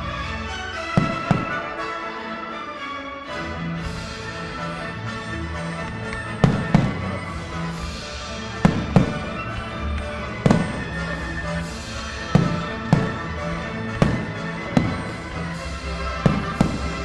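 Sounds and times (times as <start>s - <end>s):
music: 0.0s - 17.0s
firework shells bursting: 1.0s - 1.8s, 5.7s - 17.0s.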